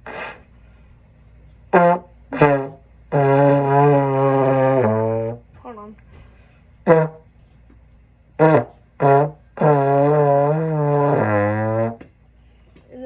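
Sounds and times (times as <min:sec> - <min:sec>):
trombone notes: 0:01.6 - 0:05.6, 0:06.8 - 0:07.6, 0:08.3 - 0:12.1.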